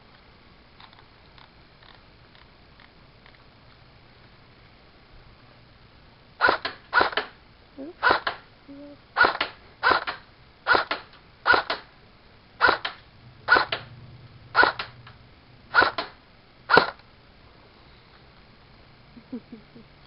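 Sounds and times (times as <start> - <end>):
airsoft rifle shots: 6.4 - 7.4, 8.0 - 8.4, 9.2 - 11.9, 12.6 - 13.9, 14.5 - 17.0.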